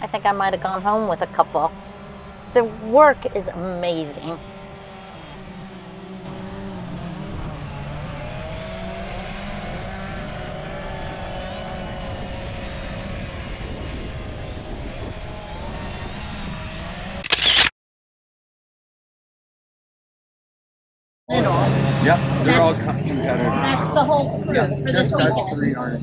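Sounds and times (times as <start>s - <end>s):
chainsaws cutting wood: 4.5s - 7.5s, 17.2s - 17.7s.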